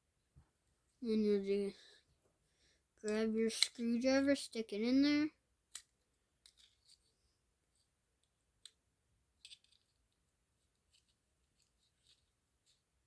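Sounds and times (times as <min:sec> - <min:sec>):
screwdriver clicking and scraping metal: 0:09.4 - 0:09.9.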